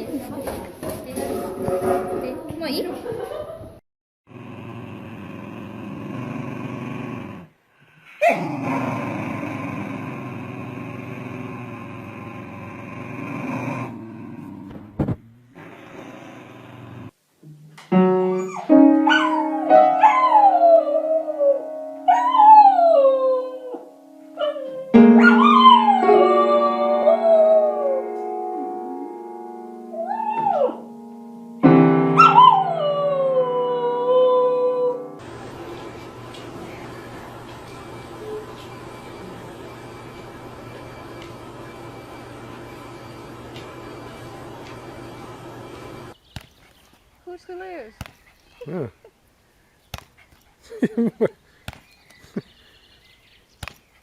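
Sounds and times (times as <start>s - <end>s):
dog growling: 4.3s - 17.2s
piano chords: 17.4s - 46.2s
dog howling: 18.4s - 28.2s, 30.0s - 30.9s, 32.1s - 35.2s.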